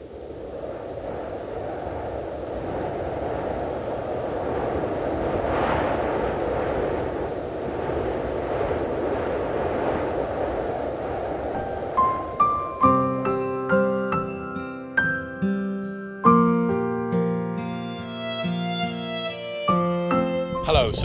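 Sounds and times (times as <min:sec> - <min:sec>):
wind rushing with gusts: 0:00.0 - 0:15.6.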